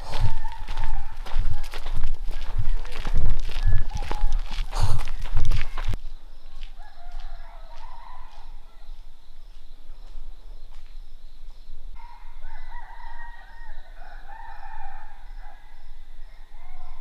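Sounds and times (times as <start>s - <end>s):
roosters crowing: 0.0s - 6.0s, 6.8s - 9.0s, 12.0s - 15.7s.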